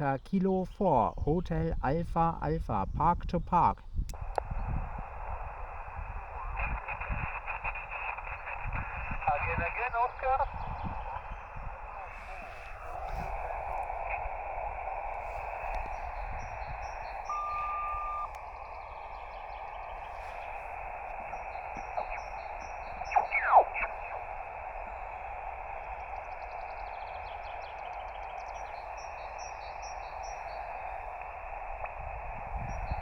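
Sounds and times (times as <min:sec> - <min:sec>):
birds chirping: 0:00.0 - 0:04.9, 0:05.5 - 0:33.0
radio static hiss: 0:00.0 - 0:33.0
steady tone: 0:11.8 - 0:23.8
whistle falling in pitch: 0:17.3 - 0:18.3.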